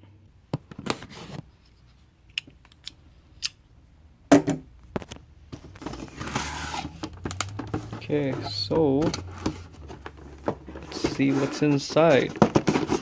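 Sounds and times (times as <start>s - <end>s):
knife cutting cardboard: 6.2s - 6.9s.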